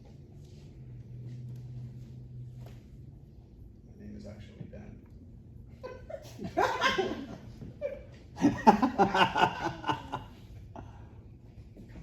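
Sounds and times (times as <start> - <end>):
people laughing: 5.8 - 10.4.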